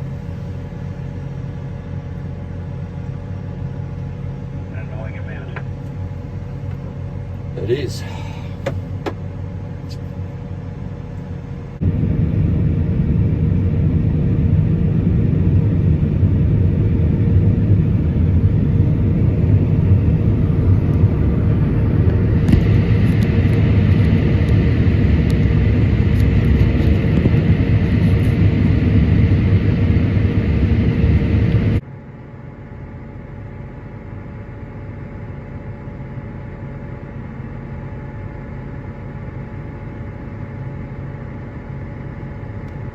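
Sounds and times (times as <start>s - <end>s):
farm machinery engine rumbling: 0.0s - 12.5s, 16.9s - 31.8s.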